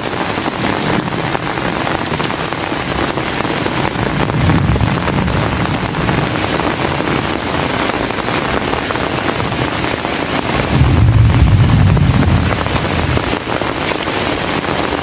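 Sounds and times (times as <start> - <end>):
heavy rain falling: 0.0 - 15.0
low rumble: 1.2 - 7.4, 10.6 - 13.5.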